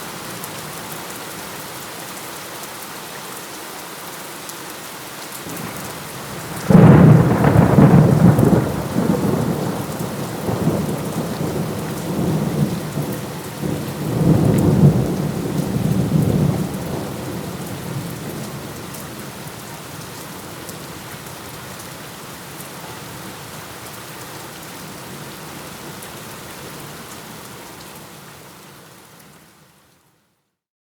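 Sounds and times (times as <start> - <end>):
steady rain: 0.0 - 30.5
thunder rumbling: 5.5 - 18.8.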